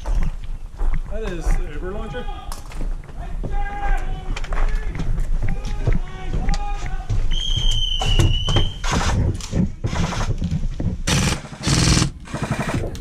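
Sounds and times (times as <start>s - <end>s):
high whistle-like tone: 7.3s - 8.8s
airsoft automatic fire: 8.8s - 9.3s, 9.9s - 10.4s, 11.1s - 13.0s.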